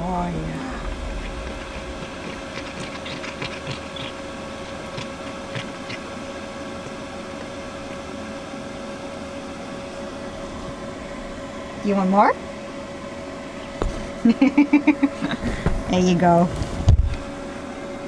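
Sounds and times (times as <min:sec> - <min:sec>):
steady mechanical hum: 0:00.0 - 0:18.0
cat crunching treats: 0:00.6 - 0:08.1.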